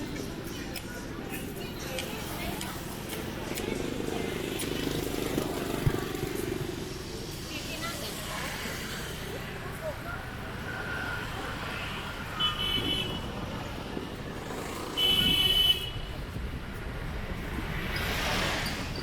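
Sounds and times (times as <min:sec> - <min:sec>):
street traffic: 0:00.0 - 0:19.0
vehicle horn honking: 0:12.4 - 0:13.3, 0:15.0 - 0:16.0.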